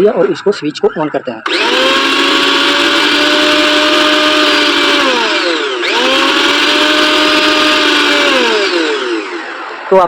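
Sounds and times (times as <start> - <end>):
mixer grinder motor whining: 1.4 - 10.0.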